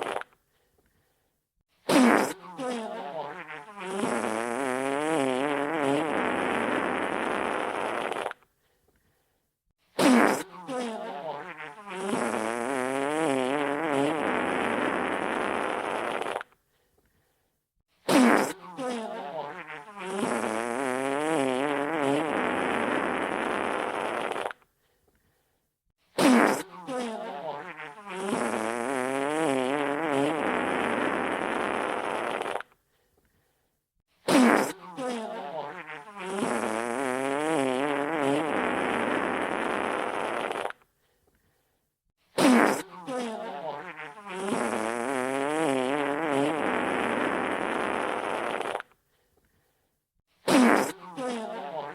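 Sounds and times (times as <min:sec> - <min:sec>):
wet fart sound effect: 0:00.0 - 0:00.4, 0:01.8 - 0:08.5, 0:10.0 - 0:16.6, 0:18.0 - 0:24.7, 0:26.2 - 0:32.8, 0:34.2 - 0:40.9, 0:42.3 - 0:49.0, 0:50.4 - 0:51.9.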